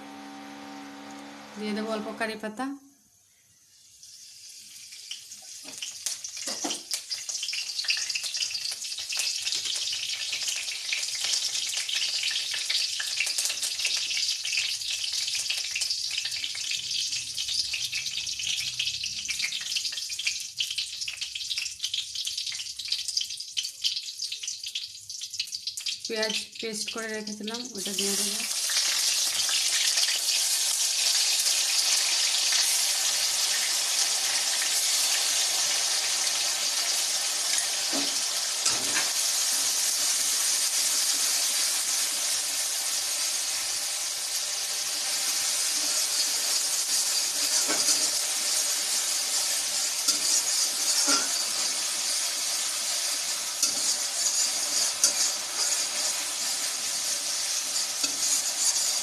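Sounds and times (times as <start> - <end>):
onion paste sizzling in oil: 3.1 - 59.0
spatula knocking and scraping pan: 47.4 - 48.2, 50.1 - 51.8.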